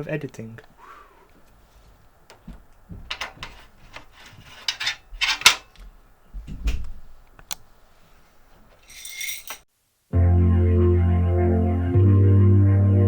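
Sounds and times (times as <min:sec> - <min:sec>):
computer parts clicking and scraping: 0:03.1 - 0:05.7.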